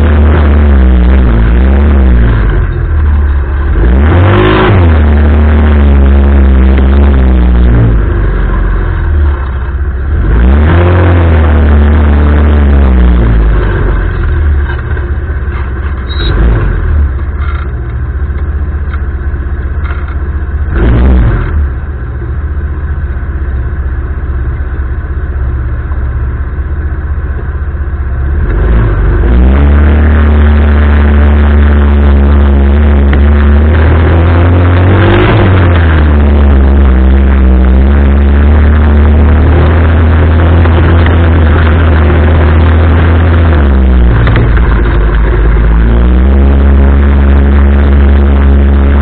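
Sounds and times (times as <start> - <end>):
atv engine revving: 0.0 - 9.4, 28.4 - 49.0.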